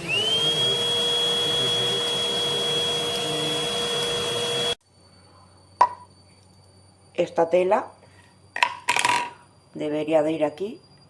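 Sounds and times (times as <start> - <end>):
stick vacuum whining: 0.0 - 4.8
vacuum motor cutting out: 0.0 - 4.8.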